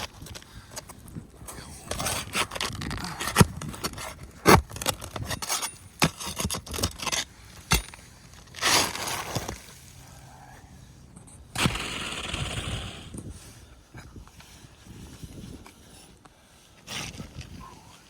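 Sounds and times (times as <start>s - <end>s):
scraping on roof shingles: 1.9s - 9.8s.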